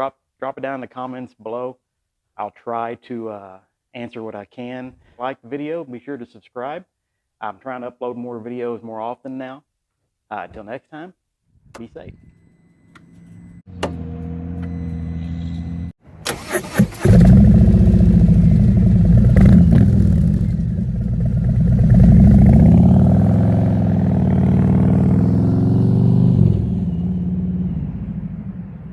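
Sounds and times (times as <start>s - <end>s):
starter motor cranking: 16.2s - 17.7s
motorcycle engine idling: 17.2s - 22.7s.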